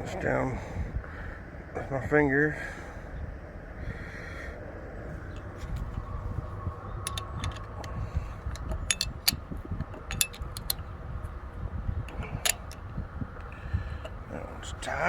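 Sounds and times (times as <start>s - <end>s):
steady low rumble: 0.0s - 15.0s
hand tools clinking against metal: 7.0s - 10.8s, 12.3s - 12.8s.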